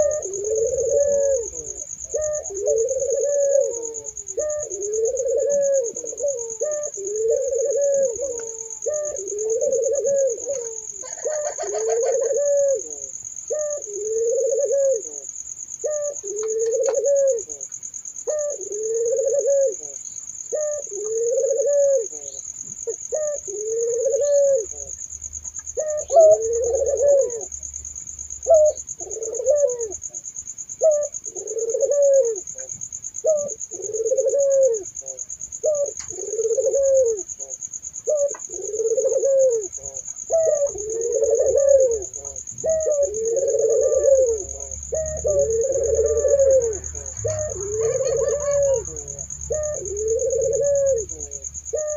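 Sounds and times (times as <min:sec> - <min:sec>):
doves cooing: 0:00.0 - 0:51.9.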